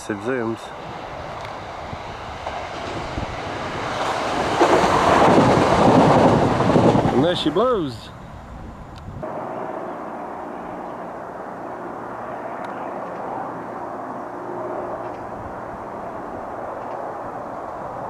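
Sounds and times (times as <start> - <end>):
diesel locomotive engine drone: 0.0 - 18.0
train running noise: 0.0 - 18.0
faint steady tones: 7.4 - 18.0.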